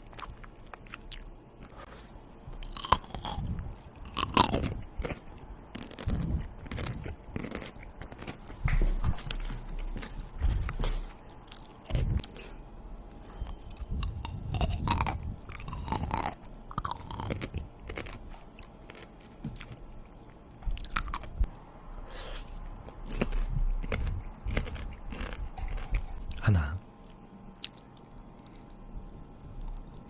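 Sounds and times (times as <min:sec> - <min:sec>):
person chewing crunchy food: 0:00.0 - 0:30.0.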